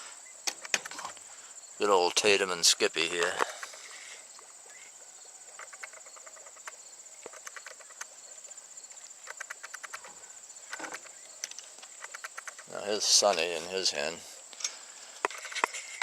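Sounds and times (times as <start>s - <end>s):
insects trilling: 0.0s - 16.0s
light clicking and rustling: 5.5s - 8.1s, 10.7s - 13.7s, 14.5s - 16.0s.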